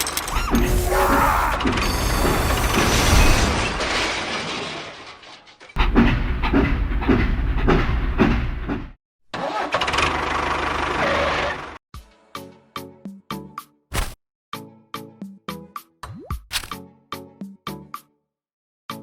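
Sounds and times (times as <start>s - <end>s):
engine cranking and running: 0.0s - 3.0s, 5.7s - 11.8s.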